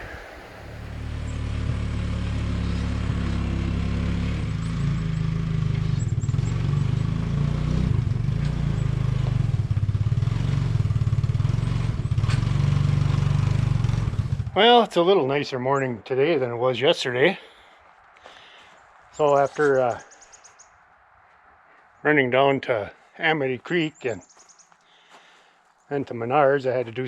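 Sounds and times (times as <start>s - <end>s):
engine droning: 0.0s - 14.6s.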